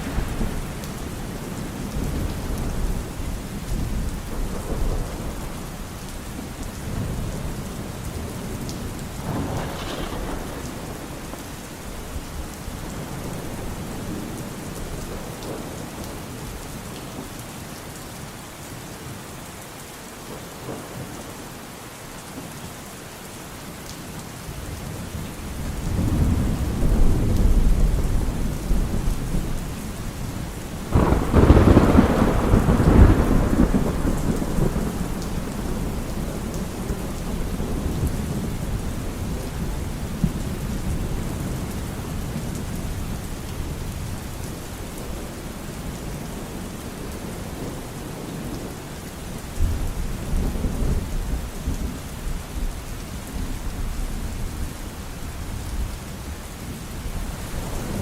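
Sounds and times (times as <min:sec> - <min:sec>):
sharp thunderclap: 0:00.0 - 0:02.9, 0:09.2 - 0:11.4, 0:30.8 - 0:41.6
rolling thunder: 0:00.0 - 0:05.8, 0:09.1 - 0:15.8, 0:25.6 - 0:45.3
steady rain: 0:00.0 - 0:58.0.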